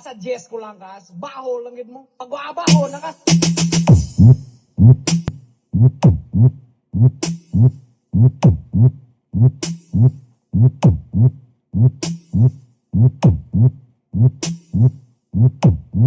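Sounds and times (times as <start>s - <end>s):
electronic dance music: 2.7s - 4.0s.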